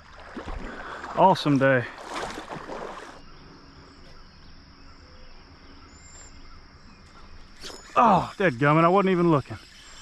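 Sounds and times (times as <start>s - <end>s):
high insect drone: 0.6s - 10.0s
short high bird chirp: 7.1s - 8.6s.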